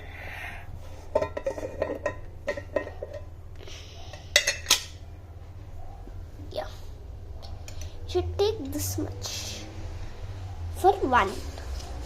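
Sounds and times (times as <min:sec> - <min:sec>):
dishes and utensils clinking: 0:01.0 - 0:03.3, 0:04.1 - 0:05.0.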